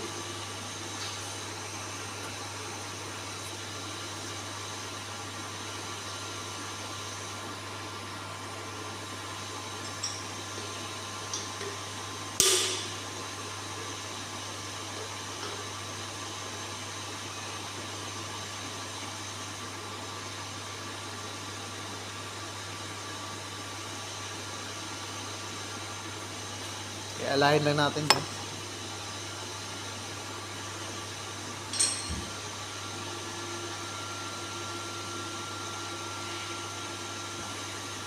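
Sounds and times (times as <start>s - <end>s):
sharp knock with ring: 12.4s - 13.0s.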